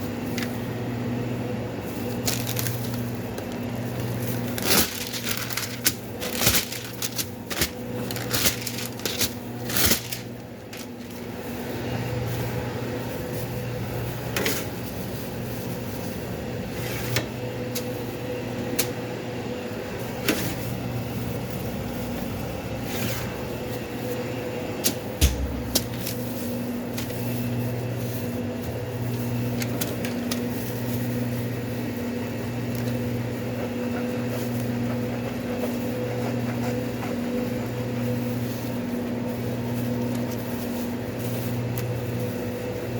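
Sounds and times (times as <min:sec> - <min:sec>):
machine hum: 0:00.0 - 0:42.4
dull thump: 0:25.2 - 0:25.9.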